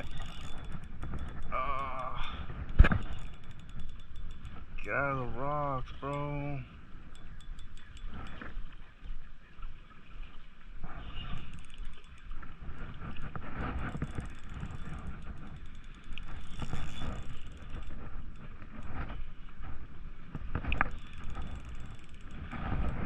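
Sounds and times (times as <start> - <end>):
fishing reel clicking: 0.0 - 8.7, 11.2 - 19.3, 20.6 - 23.0.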